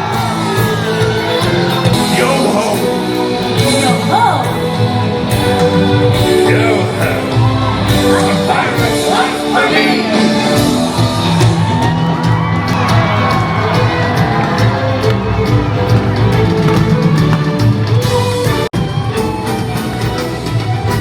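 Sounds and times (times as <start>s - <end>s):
people shouting and whooping: 0.0s - 2.7s, 7.1s - 18.1s, 18.8s - 21.0s
music with singing voice: 0.0s - 21.0s.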